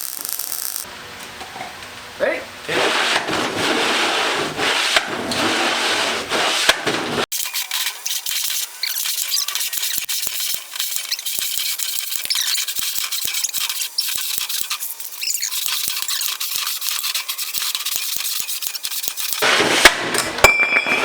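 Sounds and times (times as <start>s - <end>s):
metal parts scraping and squeaking: 7.3s - 19.4s.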